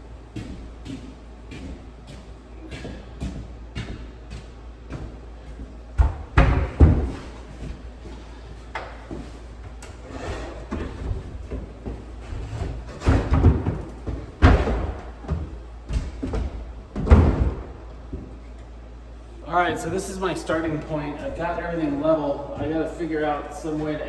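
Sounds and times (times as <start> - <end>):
cabinets dragging: 10.0 - 11.4.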